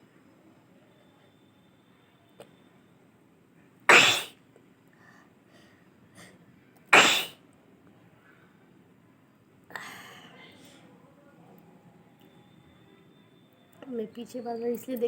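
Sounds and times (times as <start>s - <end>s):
woman sneezing: 3.9s - 4.3s, 7.0s - 7.4s.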